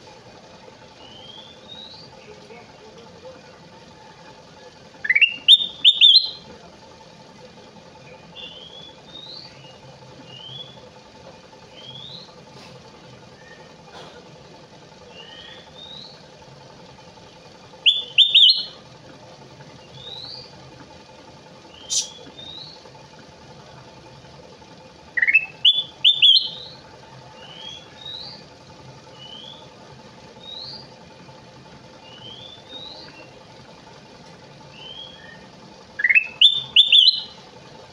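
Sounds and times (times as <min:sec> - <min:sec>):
faint steady hum: 0:00.0 - 0:37.9
bulbul singing whistled notes: 0:01.0 - 0:02.1, 0:05.0 - 0:06.4, 0:08.4 - 0:10.8, 0:11.7 - 0:12.4, 0:15.1 - 0:16.2, 0:17.8 - 0:18.8, 0:19.8 - 0:20.5, 0:21.7 - 0:22.8, 0:25.1 - 0:26.8, 0:27.4 - 0:28.4, 0:29.1 - 0:29.7, 0:30.4 - 0:30.9, 0:32.0 - 0:33.4, 0:34.7 - 0:37.4.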